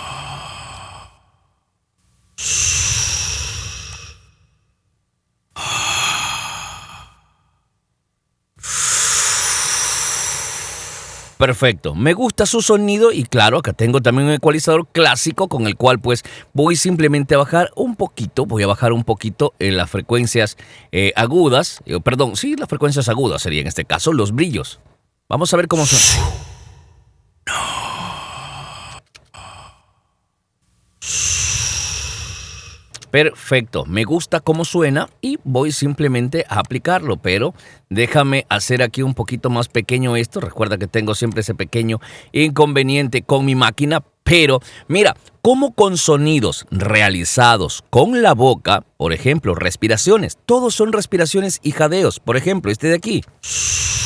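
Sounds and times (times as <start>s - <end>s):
processed breathy exhales: 0.0s - 1.6s, 2.4s - 4.6s, 5.6s - 7.5s, 8.6s - 11.4s, 25.7s - 30.0s, 31.0s - 32.9s, 53.4s - 54.0s
breathy sigh with reverb: 2.4s - 4.6s, 25.8s - 29.8s.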